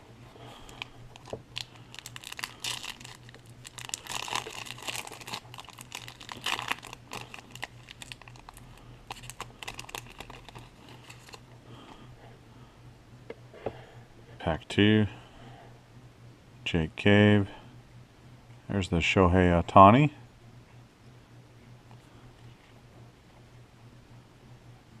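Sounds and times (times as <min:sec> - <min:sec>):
cards clicking and rustling: 0:00.6 - 0:11.4
wrapper tearing and crinkling: 0:00.7 - 0:11.4.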